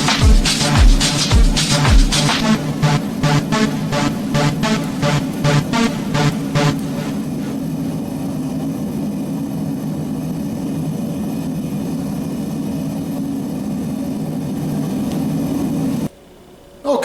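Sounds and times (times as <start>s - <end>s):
steady low drone: 0.0s - 8.6s.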